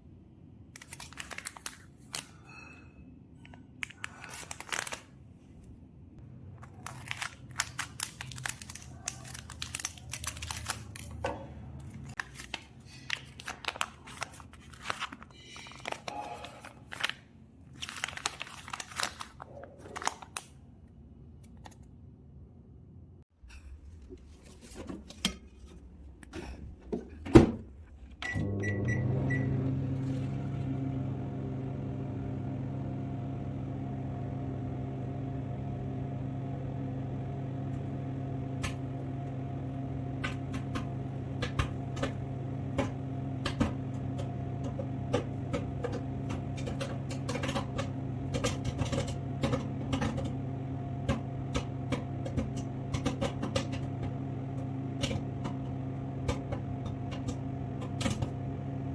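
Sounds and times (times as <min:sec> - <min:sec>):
microwave humming: 0:27.4 - 0:58.9
microwave beeps: 0:28.2 - 0:30.0
popcorn popping: 0:40.2 - 0:50.4, 0:51.0 - 0:58.4.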